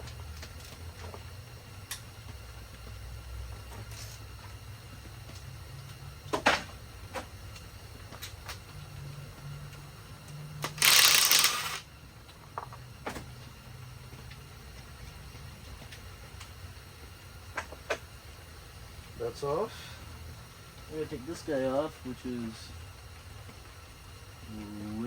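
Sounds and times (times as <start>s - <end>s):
rapid ratcheting: 10.6s - 11.8s.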